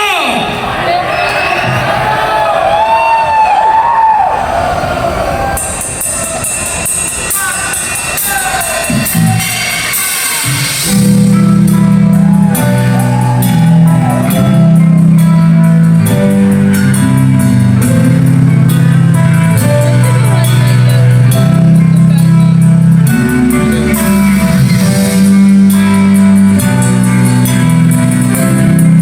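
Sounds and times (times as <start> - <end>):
live rock band playing: 5.6 - 29.0.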